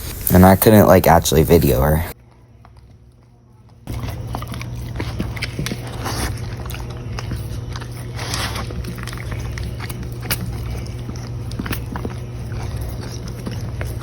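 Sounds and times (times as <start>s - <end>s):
steady low hum: 0.0s - 14.0s
dog licking and chewing: 2.3s - 14.0s.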